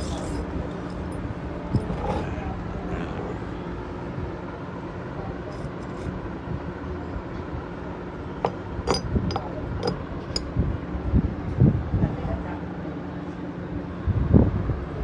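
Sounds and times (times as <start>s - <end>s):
metal tools clinking: 0.0s - 2.3s, 5.5s - 6.1s, 8.4s - 10.5s
steady low hum: 0.0s - 13.1s.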